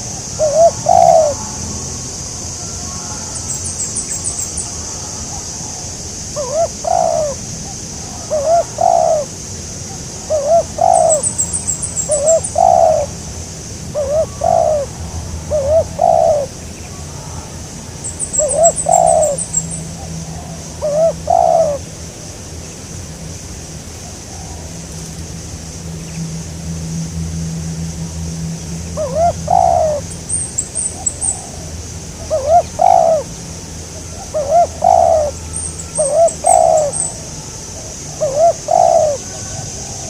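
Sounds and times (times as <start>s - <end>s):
dove cooing: 0.0s - 1.6s, 2.6s - 13.2s, 13.9s - 21.9s, 28.9s - 33.4s, 34.0s - 40.0s.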